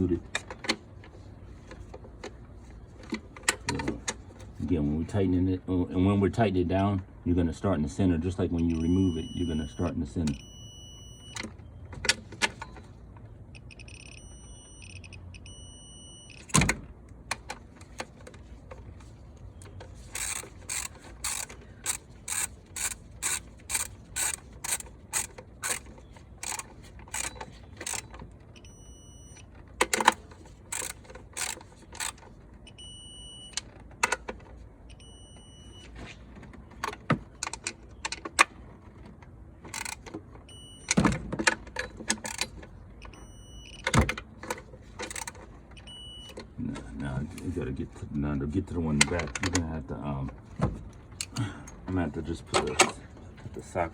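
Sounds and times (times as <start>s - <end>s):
ratchet wrench clicking: 20.1s - 28.0s, 30.0s - 32.2s.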